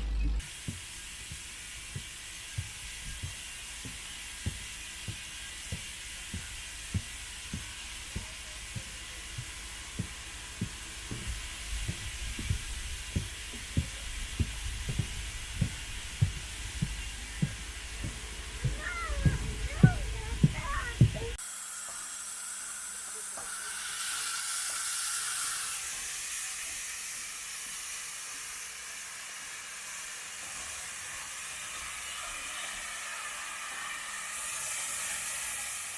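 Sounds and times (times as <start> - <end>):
steam train low thuds: 0.0 - 22.0
steam hiss: 0.4 - 35.9.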